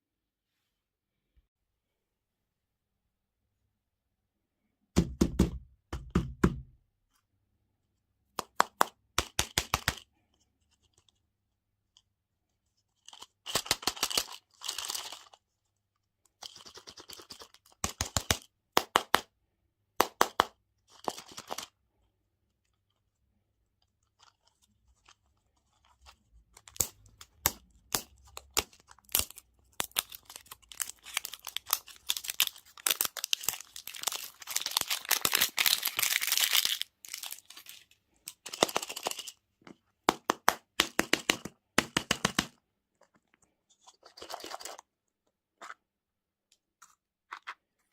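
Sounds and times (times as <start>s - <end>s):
plastic packaging crinkling: 24.0s - 39.4s.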